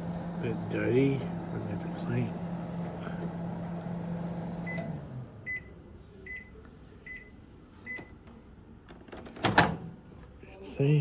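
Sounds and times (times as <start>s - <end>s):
microwave oven humming: 0.0s - 6.5s.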